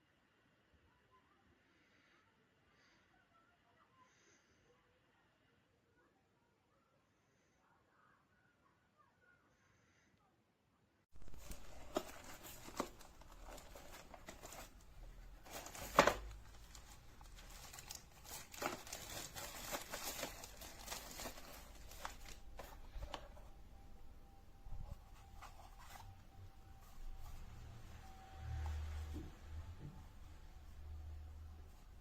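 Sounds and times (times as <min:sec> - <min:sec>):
crinkling and rustling handling: 0:11.1 - 0:32.0.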